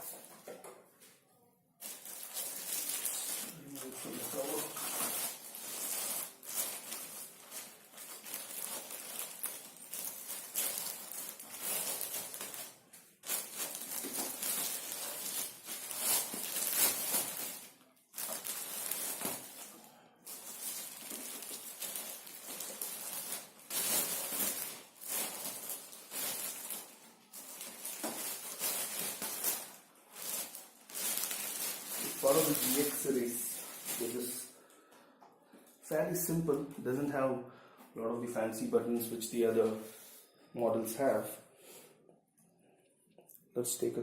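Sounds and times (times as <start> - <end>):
plastic wrapping rustling: 1.8 - 34.6.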